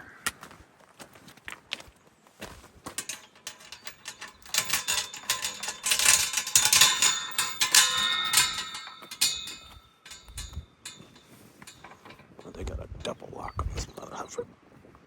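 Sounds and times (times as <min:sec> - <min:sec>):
metal gate latch and chain rattling: 0:02.9 - 0:13.7.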